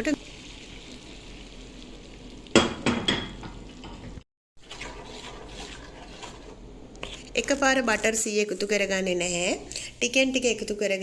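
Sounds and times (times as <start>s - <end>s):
spoon scraping flour in a pan: 4.8s - 7.3s.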